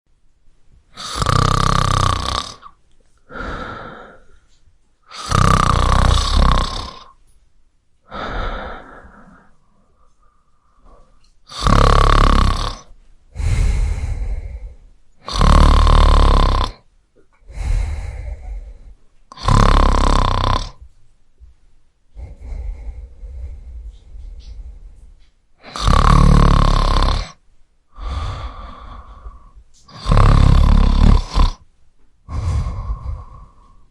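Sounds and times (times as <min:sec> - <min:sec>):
man snoring: 0:01.0 - 0:04.2, 0:05.1 - 0:07.1, 0:11.5 - 0:16.8, 0:17.5 - 0:20.8, 0:22.2 - 0:24.6, 0:25.6 - 0:27.4, 0:28.0 - 0:31.6, 0:32.3 - 0:33.8
soft breathing: 0:02.6 - 0:05.4, 0:08.0 - 0:31.6, 0:32.2 - 0:33.9.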